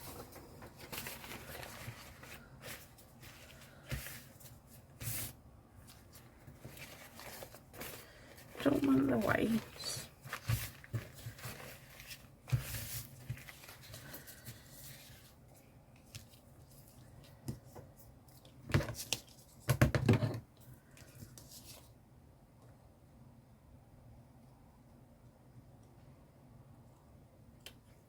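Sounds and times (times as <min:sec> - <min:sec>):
paper rustling: 0:00.0 - 0:19.6.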